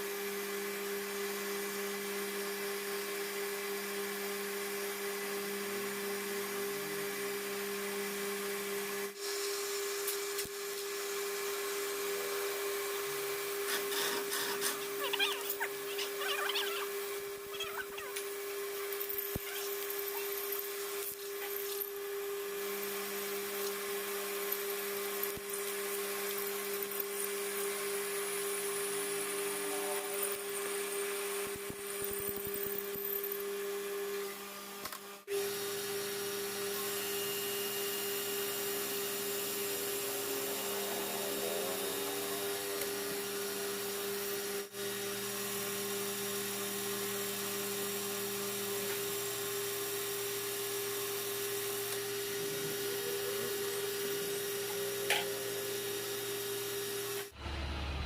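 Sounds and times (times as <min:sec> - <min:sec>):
metal lathe humming: 0:16.8 - 0:32.0, 0:32.8 - 0:58.0.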